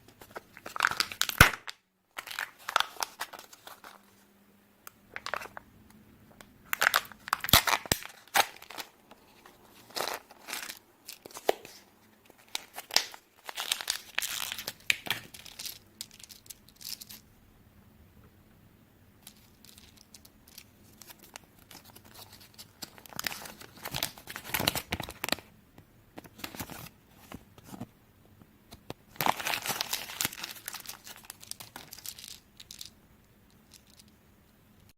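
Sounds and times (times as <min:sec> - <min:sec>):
foil wrappers crinkling: 0:00.2 - 0:04.0, 0:06.7 - 0:09.0, 0:09.7 - 0:17.0, 0:29.2 - 0:32.9.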